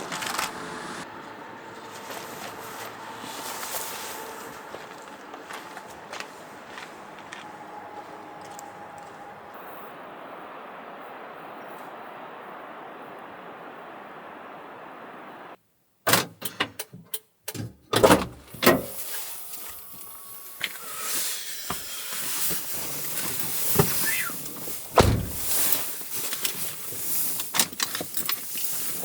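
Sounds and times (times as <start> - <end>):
scraping and rustling: 1.8 - 5.8.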